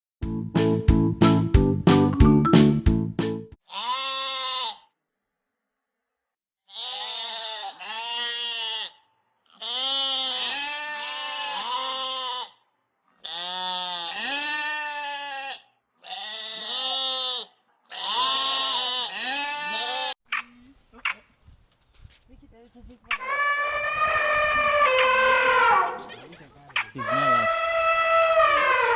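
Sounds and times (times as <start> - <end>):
farm animal bleating: 3.6 - 4.9, 6.7 - 20.2, 23.2 - 26.3, 27.0 - 28.9.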